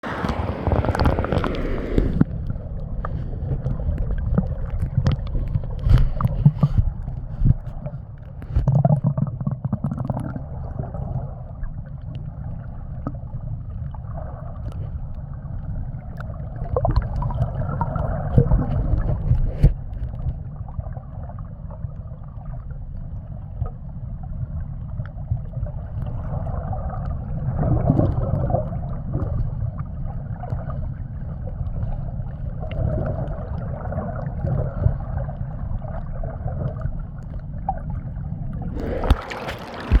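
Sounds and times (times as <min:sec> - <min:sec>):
water sloshing around boat: 0:00.0 - 0:08.9, 0:30.4 - 0:40.0
steady low rumble: 0:00.0 - 0:09.8, 0:28.3 - 0:40.0.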